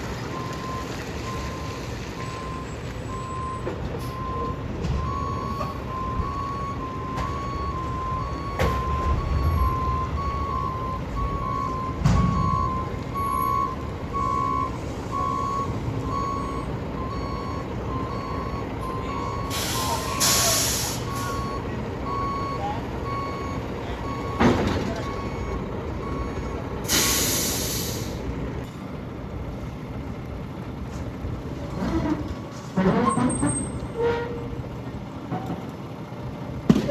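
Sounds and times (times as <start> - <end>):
diesel engine rumble: 0.0 - 36.9
truck backup alarm beeping: 0.1 - 36.6
air-brake hisses: 19.5 - 21.3, 26.9 - 28.2.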